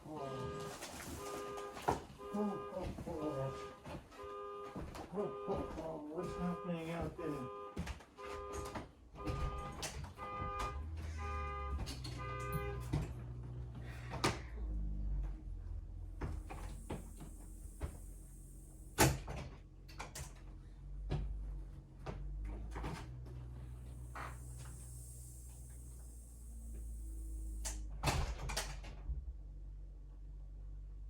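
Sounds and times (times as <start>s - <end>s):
car alarm horn blasts: 0.0s - 14.8s, 16.3s - 19.1s, 23.6s - 27.9s
knocks and clatter: 7.8s - 18.0s.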